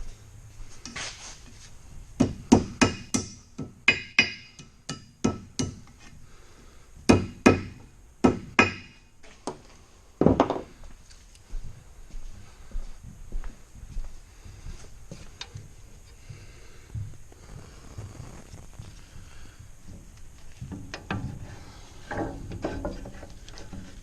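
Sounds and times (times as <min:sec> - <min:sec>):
hammer striking steel: 0:02.2 - 0:05.8, 0:07.1 - 0:09.0.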